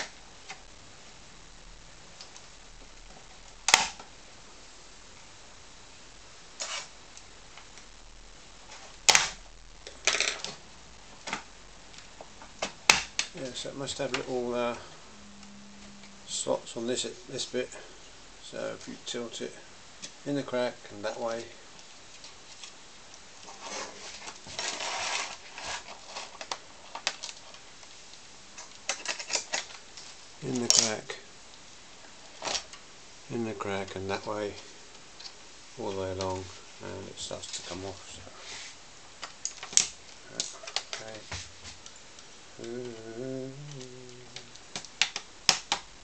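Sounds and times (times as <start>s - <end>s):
sharp plastic snap: 44.7s - 45.9s.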